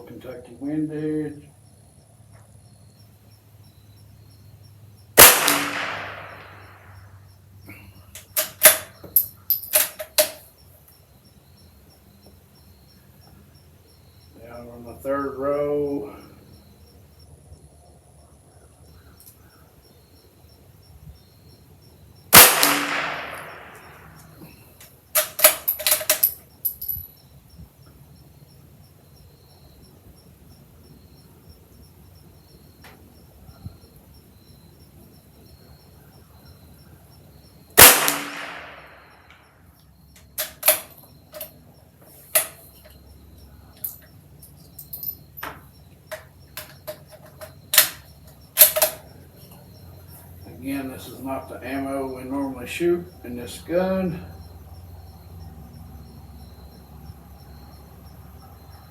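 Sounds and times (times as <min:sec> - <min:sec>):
rifle shots: 0:05.2 - 0:07.0, 0:22.3 - 0:24.2, 0:37.8 - 0:39.2
rifle bolt metallic clicks: 0:48.6 - 0:49.0.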